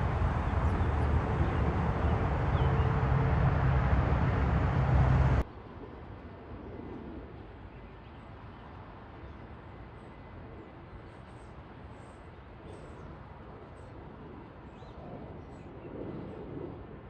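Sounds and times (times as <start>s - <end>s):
small birds chirping: 0.0s - 3.9s
low rumble and hiss: 0.0s - 17.0s.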